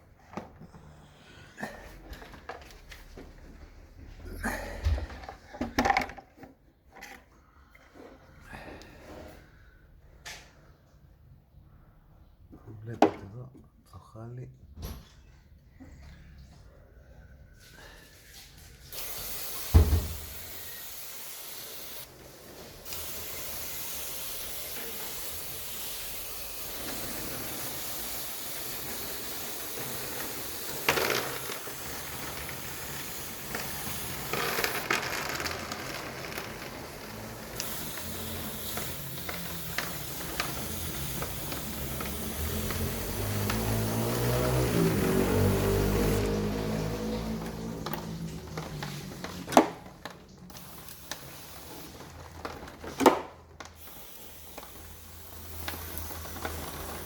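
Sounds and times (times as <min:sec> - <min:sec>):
sprayer hissing: 0:18.9 - 0:49.7, 0:50.5 - 0:57.0.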